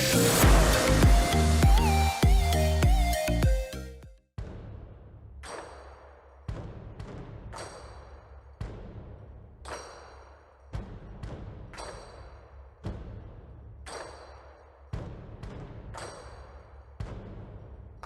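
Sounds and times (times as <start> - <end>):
sharp metallic strikes ringing: 0.0 - 2.5.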